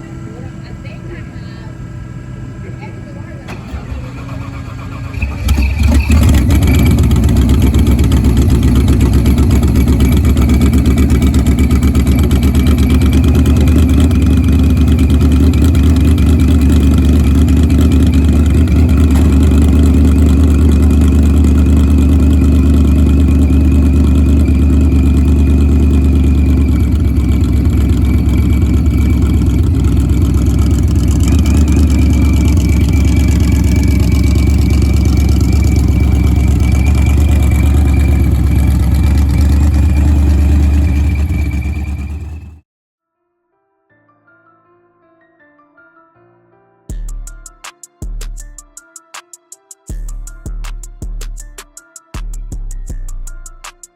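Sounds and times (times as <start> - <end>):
engine idling: 0.0 - 42.6.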